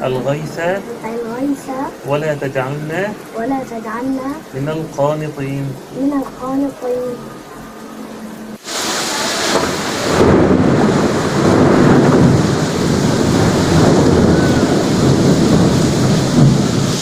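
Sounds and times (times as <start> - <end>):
heavy rain hiss: 0.0 - 17.0
thunder rumbling: 8.7 - 17.0.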